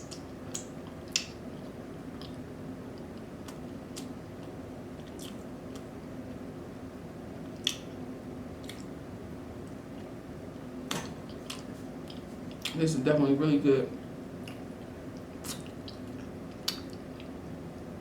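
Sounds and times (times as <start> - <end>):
chewing with wet mouth smacks: 0.0 - 2.4, 3.0 - 5.9, 7.5 - 7.9, 8.6 - 9.0, 11.0 - 12.8, 14.4 - 17.8
steady low hum: 0.0 - 18.0.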